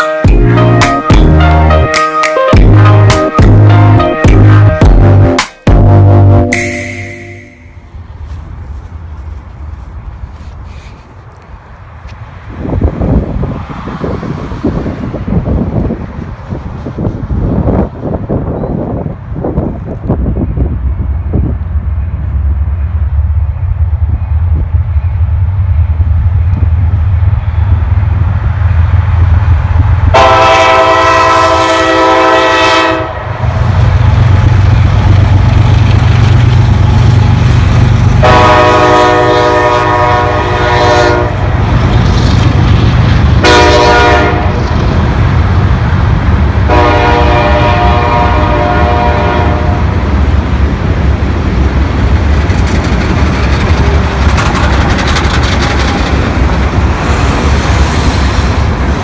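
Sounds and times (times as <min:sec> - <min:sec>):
diesel locomotive rumble: 0:00.0 - 0:02.0, 0:02.6 - 0:06.5, 0:07.2 - 0:59.0
locomotive air horn blasts: 0:30.1 - 0:33.4, 0:38.2 - 0:41.6, 0:43.4 - 0:44.6, 0:46.7 - 0:49.9.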